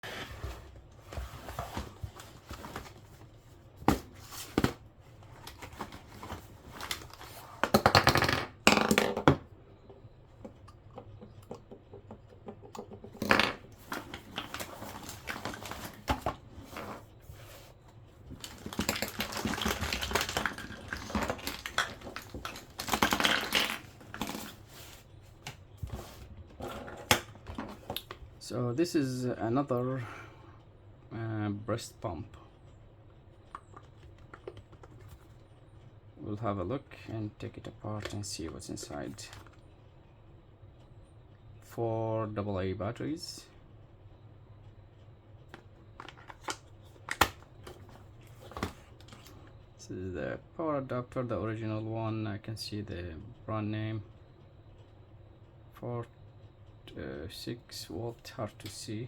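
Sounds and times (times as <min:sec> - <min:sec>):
objects clattering: 0:00.0 - 0:09.4, 0:10.4 - 0:28.2.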